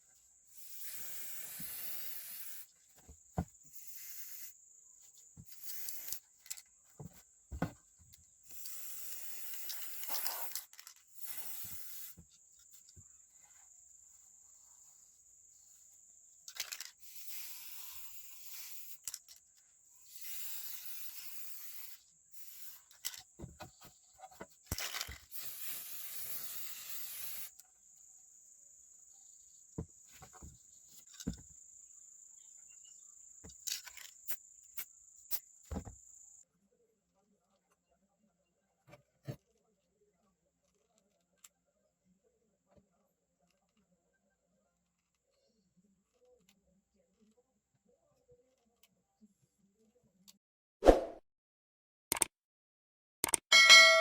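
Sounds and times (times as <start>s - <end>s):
spraying hiss: 0.6s - 2.7s, 11.2s - 12.2s, 25.3s - 27.5s.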